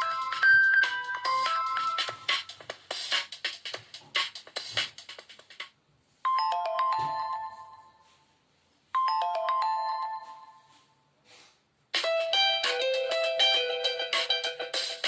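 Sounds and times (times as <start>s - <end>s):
falling bell-like phone chime: 6.3s - 8.2s, 9.0s - 11.0s.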